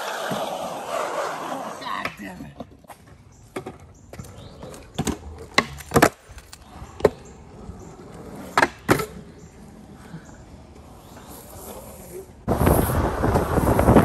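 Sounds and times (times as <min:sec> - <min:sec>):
skateboard clacking on pavement: 0:00.2 - 0:09.2.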